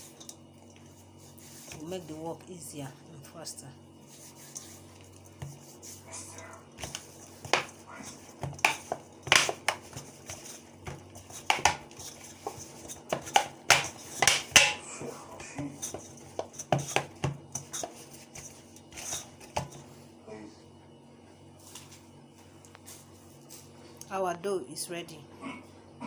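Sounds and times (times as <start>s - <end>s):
dough being kneaded by hand: 0.0s - 3.0s, 4.0s - 20.1s.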